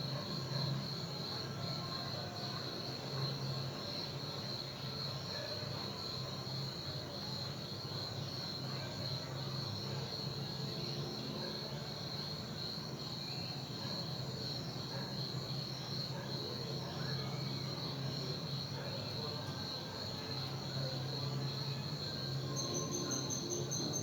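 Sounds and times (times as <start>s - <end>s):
crickets chirping: 0.0s - 24.0s.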